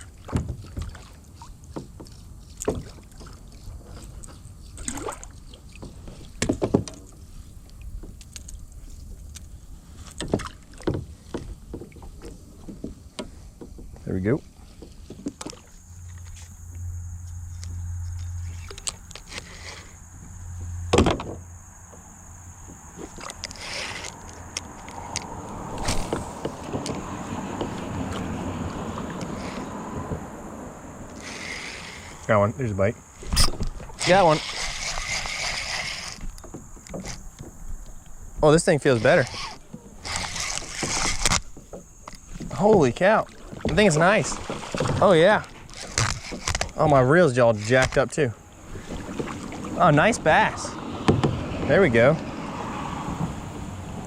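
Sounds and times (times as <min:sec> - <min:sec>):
water noise: 0:00.0 - 0:54.0
wind: 0:00.0 - 0:54.0
knocks and bumps on kayak: 0:00.2 - 0:01.0, 0:05.8 - 0:07.1, 0:20.9 - 0:21.4, 0:40.8 - 0:46.5, 0:48.7 - 0:51.8.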